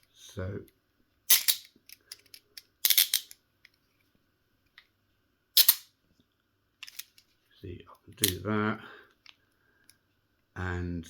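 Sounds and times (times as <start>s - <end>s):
handcuffs clicking: 1.3s - 3.4s.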